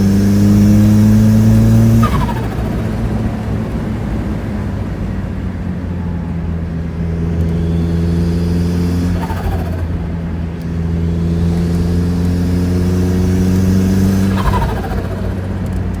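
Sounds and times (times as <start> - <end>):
car engine pulling under boost: 0.0 - 16.0
turbo flutter whoosh: 0.3 - 3.7, 8.2 - 10.2, 11.2 - 15.8.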